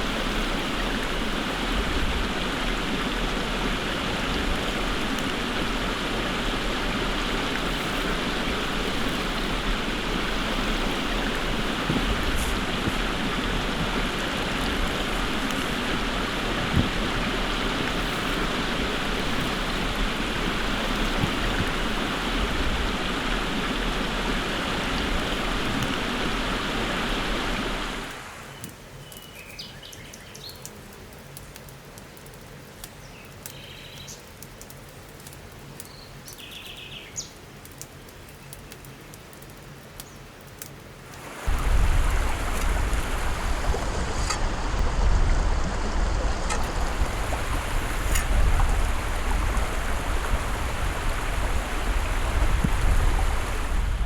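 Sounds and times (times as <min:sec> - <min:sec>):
rushing noise with low rumble: 0:00.0 - 0:28.2, 0:41.2 - 0:54.0.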